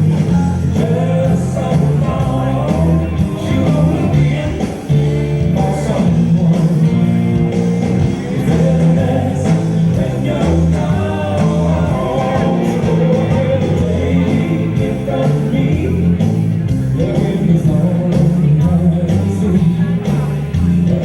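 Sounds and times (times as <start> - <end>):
bass line: 0.0 - 21.0
pop-rock song with vocals: 0.0 - 21.0.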